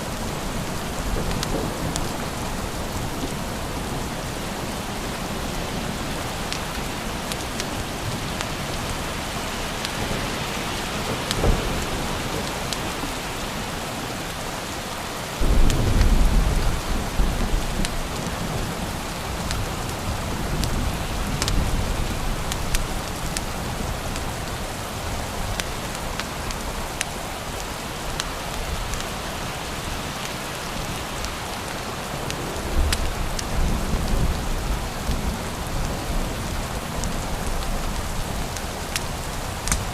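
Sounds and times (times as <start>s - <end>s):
steady rain falling: 0.0s - 39.9s
thunder rumbling: 0.1s - 9.2s, 15.4s - 26.8s.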